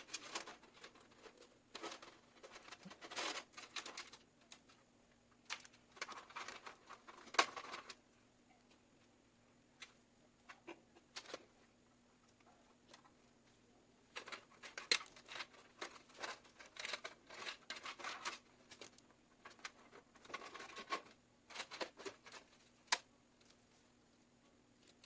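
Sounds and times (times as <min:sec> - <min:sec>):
hands handling computer parts: 0:00.0 - 0:04.8, 0:05.4 - 0:08.0, 0:12.3 - 0:23.8
faint steady hum: 0:00.0 - 0:25.0.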